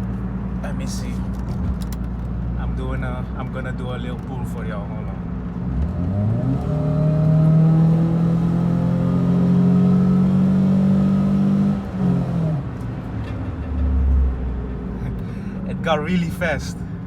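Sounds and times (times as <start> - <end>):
car engine accelerating hard: 5.6 - 12.8.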